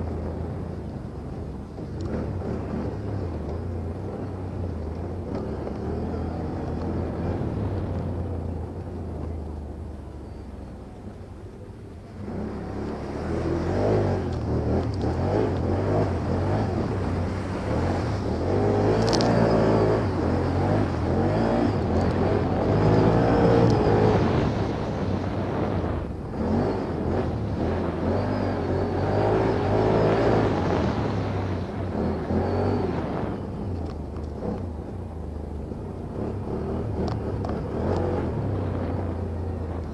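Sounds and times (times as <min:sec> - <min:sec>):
quad bike engine revving: 0:12.2 - 0:34.9, 0:36.0 - 0:39.9.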